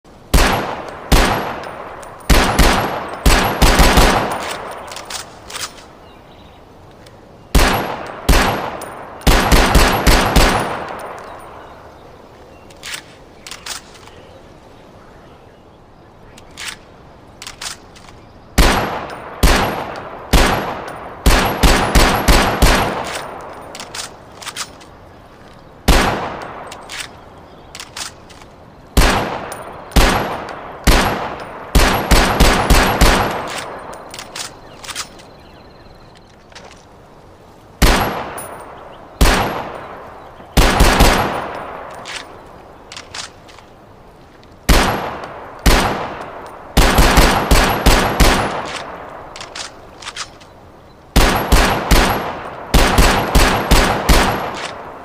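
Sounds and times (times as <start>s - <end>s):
pistol gunshots with echo: 0.3s - 5.8s, 7.5s - 11.7s, 18.6s - 24.2s, 25.8s - 26.8s, 29.0s - 34.7s, 37.8s - 43.3s, 44.7s - 49.8s, 51.2s - 55.0s
light clicks: 4.3s - 6.0s, 12.6s - 14.3s, 16.3s - 18.3s, 23.0s - 25.7s, 26.4s - 28.6s, 33.4s - 37.6s, 41.4s - 46.6s, 48.6s - 50.8s.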